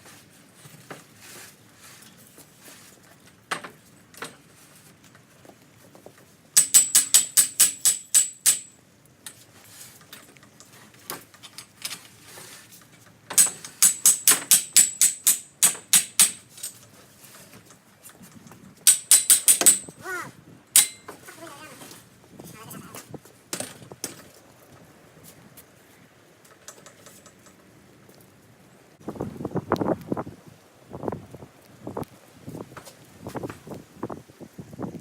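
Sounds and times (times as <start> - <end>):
hammer striking metal: 6.6 - 8.8, 13.4 - 16.5, 18.9 - 20.0, 20.7 - 21.2.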